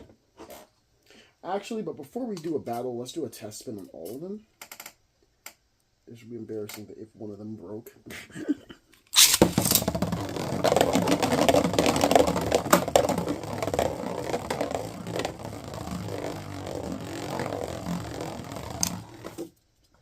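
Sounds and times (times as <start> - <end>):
spinning top scraping rattle: 9.2 - 19.4.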